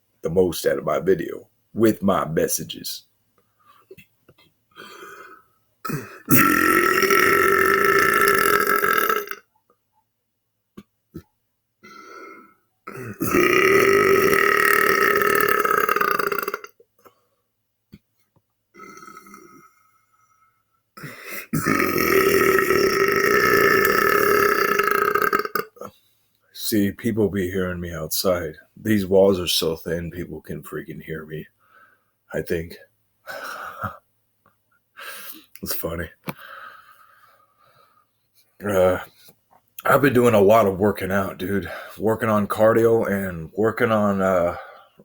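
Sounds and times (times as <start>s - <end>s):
man belching: 5.8s - 9.4s, 11.2s - 16.8s, 18.8s - 19.8s, 21.0s - 25.9s.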